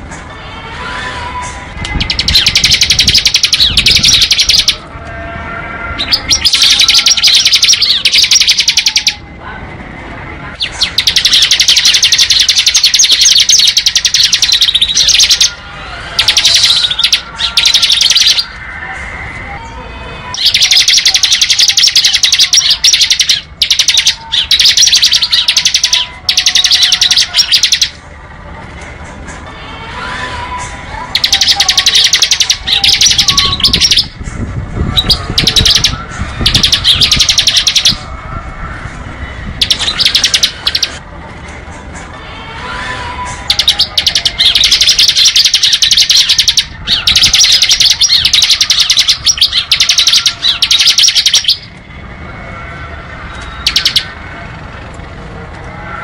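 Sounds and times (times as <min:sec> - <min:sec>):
bird rapid drilling trills: 0:01.9 - 0:04.8, 0:06.0 - 0:09.2, 0:10.6 - 0:15.6, 0:20.4 - 0:28.0, 0:31.1 - 0:34.2, 0:34.9 - 0:38.1, 0:39.6 - 0:41.0, 0:43.5 - 0:51.7
other birds chirping: 0:01.9 - 0:04.9, 0:06.0 - 0:09.2, 0:10.6 - 0:18.6, 0:20.4 - 0:28.0, 0:31.1 - 0:34.2, 0:34.9 - 0:38.1, 0:39.6 - 0:41.0, 0:43.5 - 0:51.7, 0:53.4 - 0:54.2.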